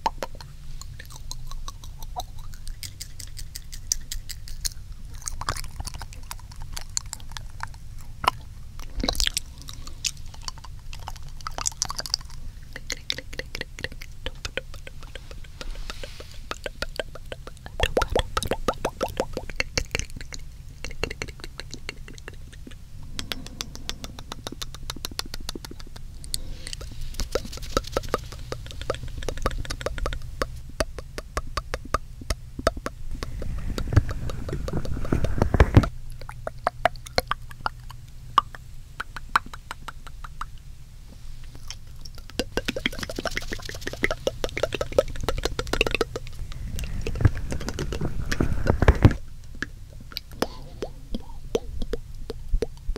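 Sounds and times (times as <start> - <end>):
wet mouth clicks and smacks: 0.0 - 40.7, 41.4 - 52.9
breathing: 8.9 - 10.3, 22.9 - 24.9, 26.2 - 27.6, 33.1 - 35.9, 46.3 - 49.2, 50.4 - 51.5.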